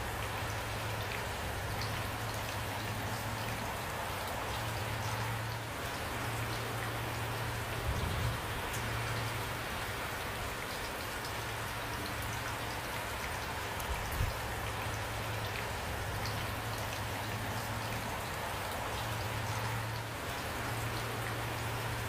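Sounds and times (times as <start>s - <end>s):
steady rain falling: 0.0s - 22.0s.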